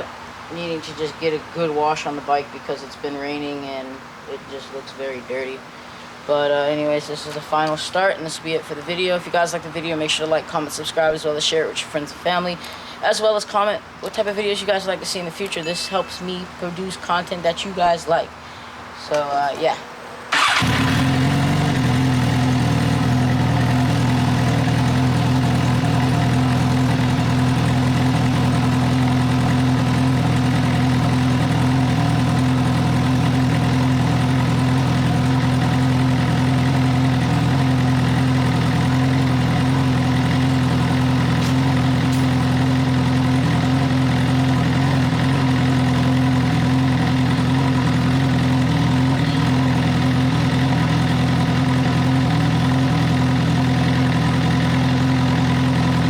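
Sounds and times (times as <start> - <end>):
motorcycle engine idling: 20.3 - 56.0.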